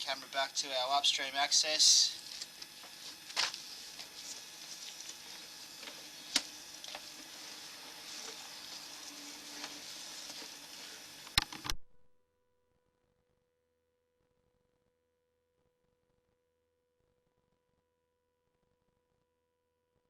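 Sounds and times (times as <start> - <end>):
cable rustling hiss: 0.0 - 11.7.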